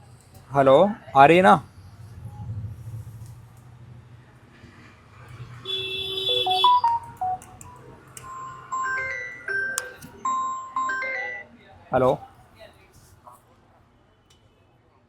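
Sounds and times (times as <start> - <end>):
phone ringtone melody: 6.3 - 11.6.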